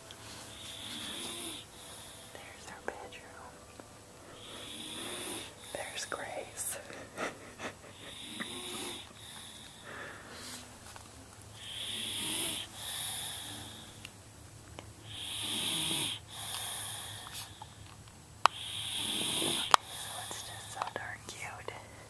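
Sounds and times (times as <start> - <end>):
girl snoring: 0.3 - 3.4, 4.4 - 7.3, 7.9 - 10.7, 11.6 - 14.0, 15.0 - 17.8, 18.5 - 20.8.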